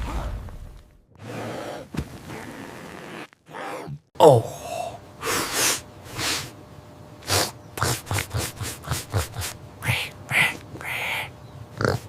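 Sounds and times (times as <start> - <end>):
cartoon character sniffing: 5.2 - 6.5, 7.2 - 11.3.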